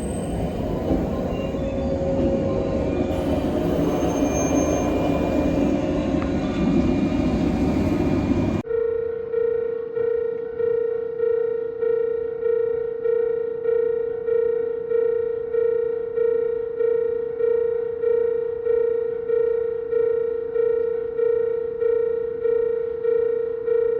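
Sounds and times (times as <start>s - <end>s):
level crossing alarm ringing: 0.0s - 8.6s.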